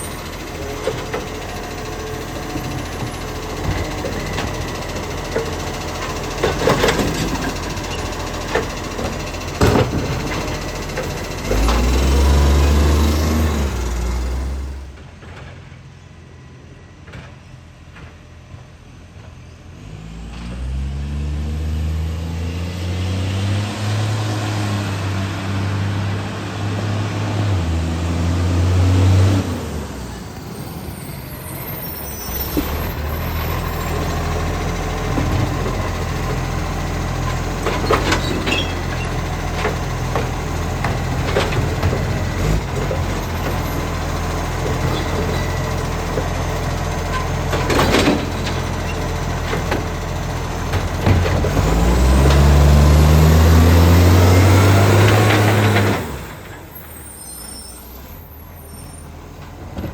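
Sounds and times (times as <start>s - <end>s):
truck diesel engine running: 0.0s - 20.0s, 24.5s - 59.9s
engine revving loudly: 11.4s - 14.9s, 19.9s - 29.9s, 51.3s - 56.3s.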